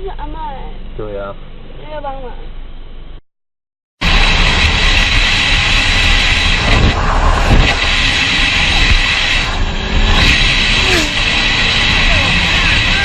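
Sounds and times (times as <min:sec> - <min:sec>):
road and wind noise: 0:00.0 - 0:03.2, 0:04.0 - 0:13.0.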